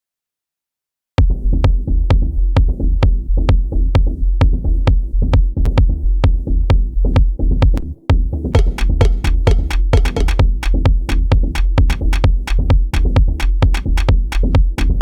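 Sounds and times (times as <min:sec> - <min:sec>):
deep bass line: 0:01.2 - 0:15.0
hissy hi-hat hits: 0:08.6 - 0:15.0
sharp percussive hits: 0:08.6 - 0:15.0.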